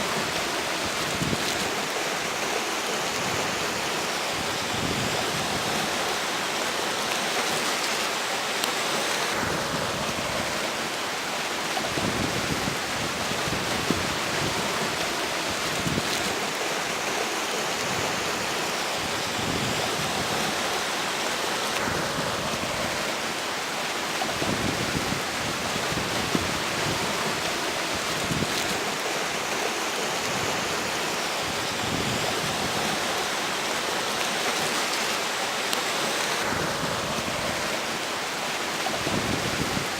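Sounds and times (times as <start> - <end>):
wind rumble on microphone: 0.0 - 1.8, 3.2 - 6.0, 9.3 - 10.8, 11.8 - 16.6, 17.8 - 20.7, 24.2 - 29.1, 30.2 - 33.1, 38.8 - 39.9
strong wind gusts: 0.0 - 6.6, 9.1 - 34.9, 35.9 - 39.9
river water flowing: 0.0 - 39.9.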